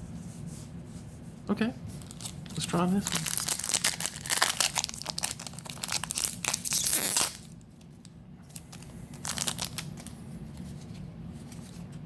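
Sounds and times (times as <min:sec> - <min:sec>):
foil wrapper crinkling: 0:01.9 - 0:10.7.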